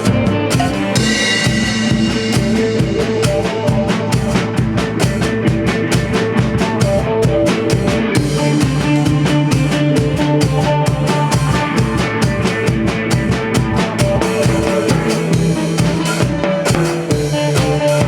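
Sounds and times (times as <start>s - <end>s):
band playing instrumental: 0.0s - 18.0s
drum kit beat: 0.0s - 18.0s.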